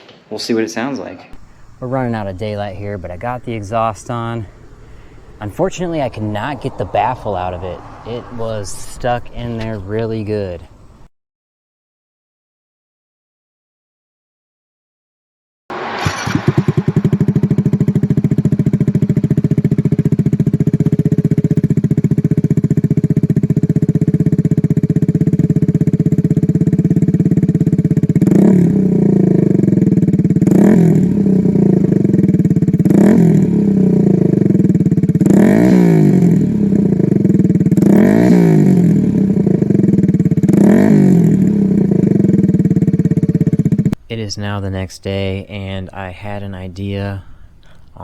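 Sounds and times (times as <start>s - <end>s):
engine revving: 1.4s - 11.1s, 15.7s - 44.0s
motorcycle engine idling: 1.4s - 11.1s, 16.6s - 44.0s.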